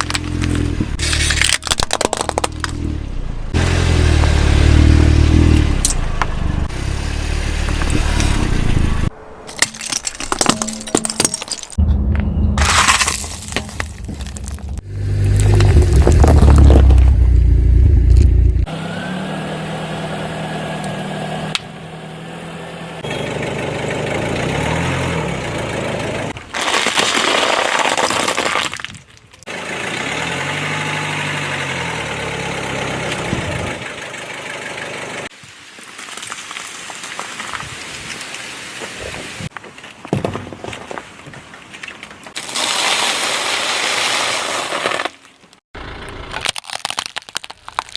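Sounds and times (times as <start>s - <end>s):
objects crunching under car: 0.0s - 2.8s, 9.5s - 11.8s, 12.6s - 18.4s, 26.4s - 29.2s, 39.5s - 45.6s
car engine running: 14.8s - 26.4s.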